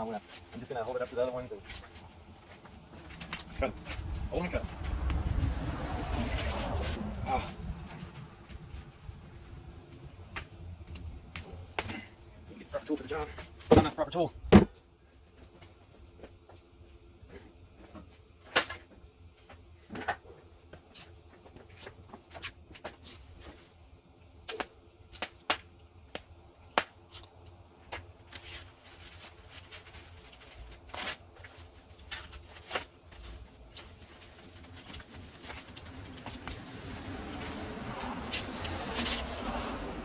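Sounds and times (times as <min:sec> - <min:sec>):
plastic wrapping rustling and tearing: 0:00.0 - 0:09.7, 0:28.0 - 0:40.0.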